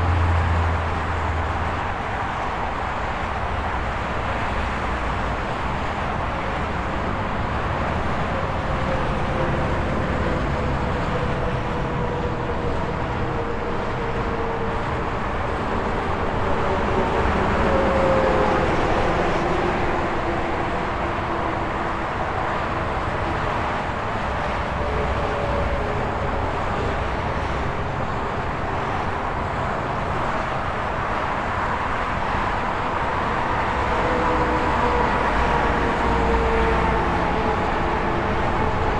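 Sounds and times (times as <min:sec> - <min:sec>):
highway traffic passing: 0:00.0 - 0:38.9.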